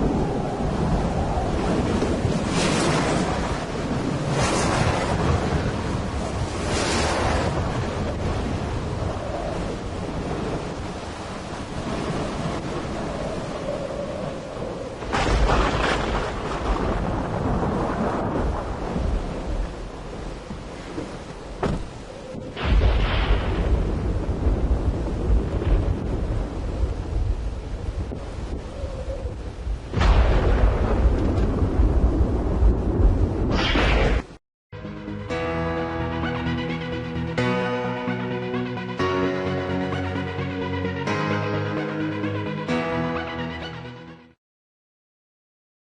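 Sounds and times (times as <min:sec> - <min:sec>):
strong wind on microphone: 0:00.0 - 0:20.7, 0:21.7 - 0:34.3.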